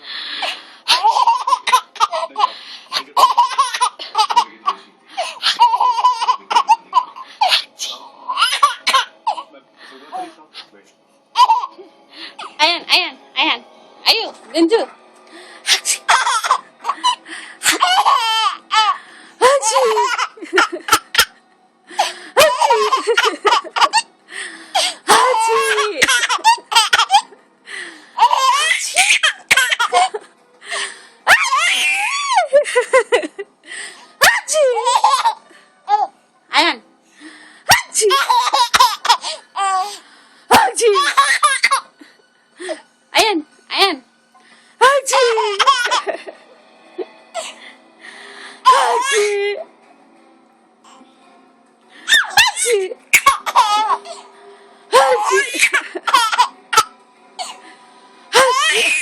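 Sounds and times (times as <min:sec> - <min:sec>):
baby laughing: 0:00.9 - 0:04.5, 0:05.2 - 0:07.7, 0:08.3 - 0:09.5, 0:11.3 - 0:11.8, 0:15.7 - 0:21.3, 0:22.4 - 0:24.1, 0:24.8 - 0:27.4, 0:28.2 - 0:30.3, 0:31.3 - 0:33.0, 0:34.2 - 0:36.1, 0:37.7 - 0:40.0, 0:40.6 - 0:41.9, 0:45.1 - 0:46.2, 0:48.6 - 0:49.3, 0:52.1 - 0:54.2, 0:54.9 - 0:56.9, 0:58.4 - 0:59.0.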